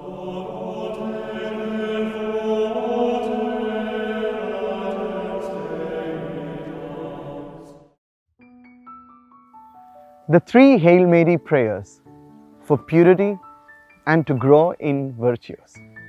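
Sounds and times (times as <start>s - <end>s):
choir-like chanted vocal chord: 0.0s - 8.0s.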